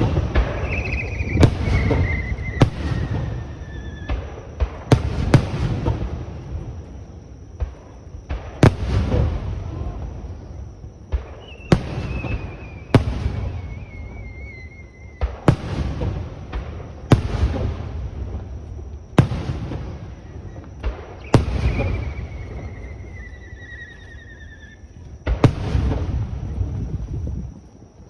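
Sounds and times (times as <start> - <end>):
small firework pops: 0.0 - 6.2, 7.5 - 10.1, 11.0 - 18.0, 20.6 - 22.7
fireworks bursting with bangs: 0.0 - 27.9
high wavering whistle: 0.4 - 4.1, 11.4 - 15.2.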